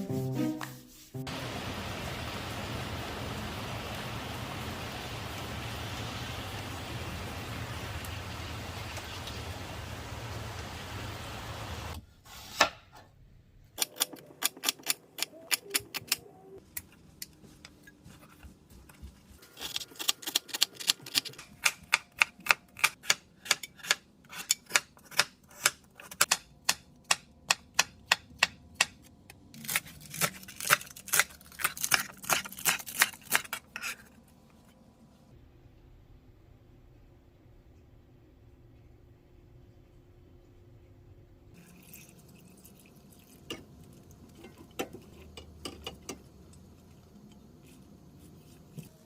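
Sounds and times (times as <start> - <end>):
steady hiss: 0.8 - 12.0.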